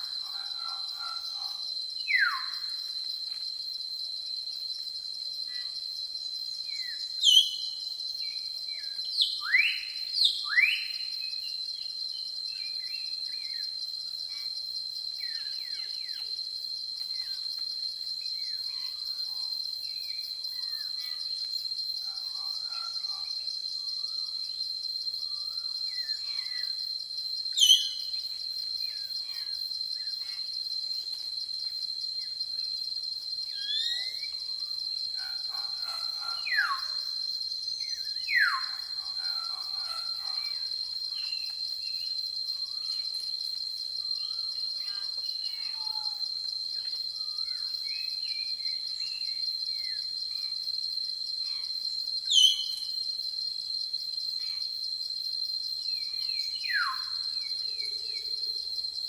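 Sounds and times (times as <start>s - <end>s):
insect drone: 0.0s - 59.0s
faint bird chirps: 27.6s - 28.0s.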